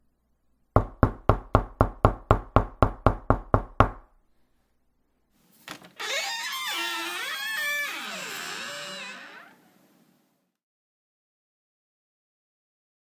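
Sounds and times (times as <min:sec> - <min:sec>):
knocking on a door: 0:00.8 - 0:04.2
squeaky door hinge creaking: 0:06.0 - 0:09.7.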